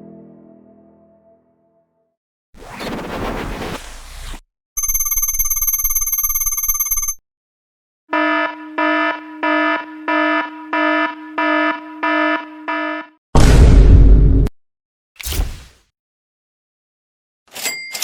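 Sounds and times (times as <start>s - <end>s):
alarm beeping: 4.8s - 7.2s, 8.1s - 13.2s
steady buzzer tone: 4.8s - 7.2s, 8.1s - 13.2s.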